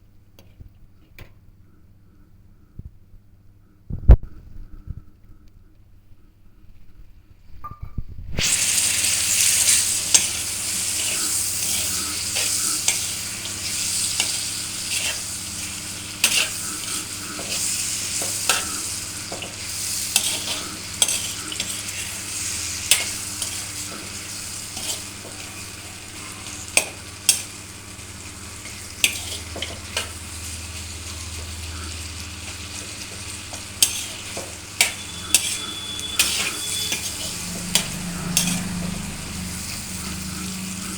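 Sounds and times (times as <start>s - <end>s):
food sizzling in a pan: 8.4s - 40.9s
spatula scraping a pan: 8.4s - 40.9s.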